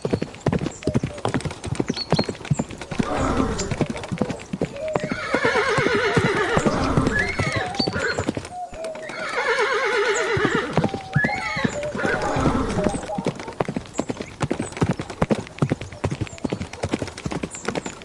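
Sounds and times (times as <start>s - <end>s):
clip-clop of hooves: 0.0s - 18.0s
horse whinnying: 2.9s - 4.0s, 4.8s - 13.1s.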